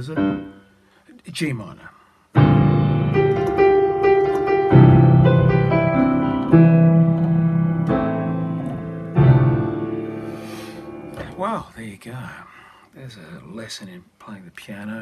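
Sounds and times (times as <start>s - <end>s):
piano chords: 0.0s - 0.8s, 2.4s - 11.5s.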